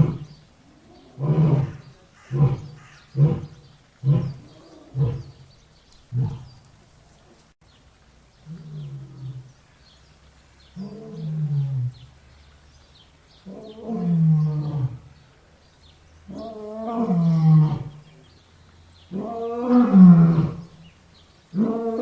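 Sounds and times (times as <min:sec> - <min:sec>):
lion roaring grunts: 0:00.0 - 0:05.4, 0:06.1 - 0:06.6.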